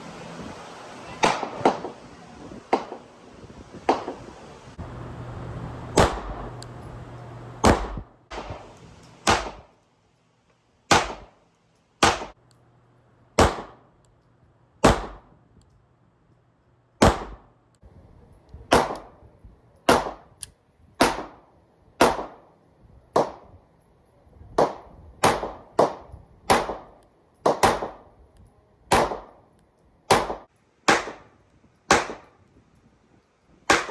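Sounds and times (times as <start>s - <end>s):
pistol shots: 1.2s - 2.0s, 2.7s - 3.1s, 5.9s - 6.5s, 7.6s - 9.7s, 10.9s - 11.4s, 12.0s - 12.4s, 13.4s - 13.8s, 14.8s - 15.3s, 17.0s - 17.5s, 18.7s - 19.2s, 19.9s - 20.3s, 21.0s - 21.4s, 22.0s - 22.4s, 23.2s - 23.5s, 24.6s - 28.1s, 28.9s - 29.4s, 30.1s - 31.3s, 31.9s - 32.3s, 33.7s - 33.9s.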